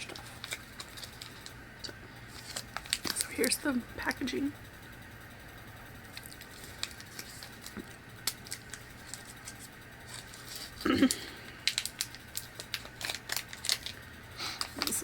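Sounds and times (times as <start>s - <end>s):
wrapper crinkling and crackling: 0.0s - 3.6s, 6.1s - 10.8s, 11.5s - 15.0s.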